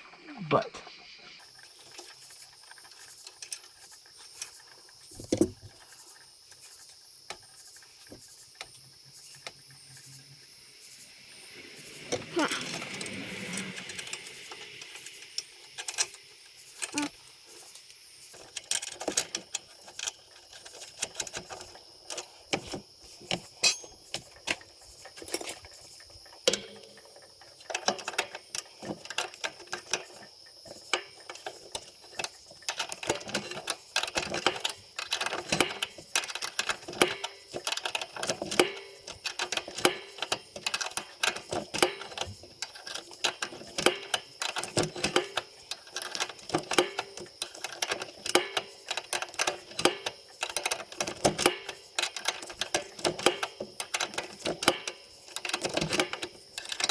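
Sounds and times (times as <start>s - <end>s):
metallic clicks and rattles of tools: 12.0s - 56.9s.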